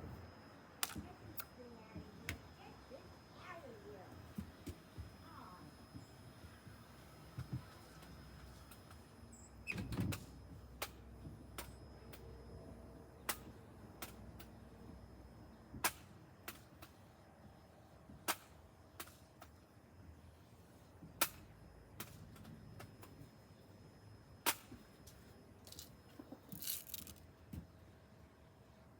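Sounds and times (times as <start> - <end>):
bb gun cracks: 0.8 - 1.0.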